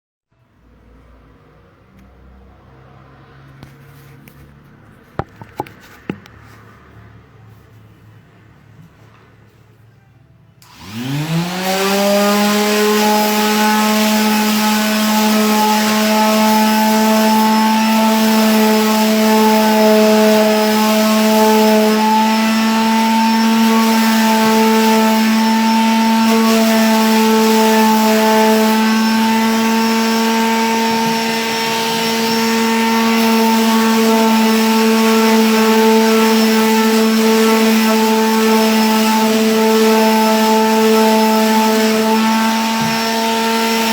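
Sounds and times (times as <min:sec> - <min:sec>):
electric sander running: 0:10.6 - 0:43.9.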